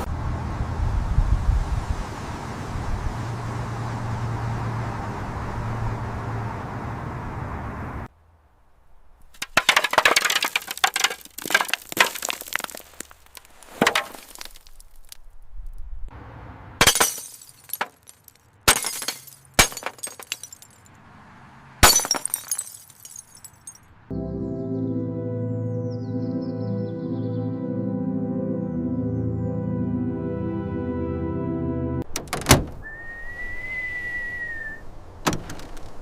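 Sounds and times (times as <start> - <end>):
glass crunching and tinkling: 9.4 - 15.2, 16.8 - 20.9, 21.8 - 23.8
glass shattering: 9.4 - 15.2, 16.8 - 20.9, 21.8 - 23.8
ambient music: 24.1 - 32.0.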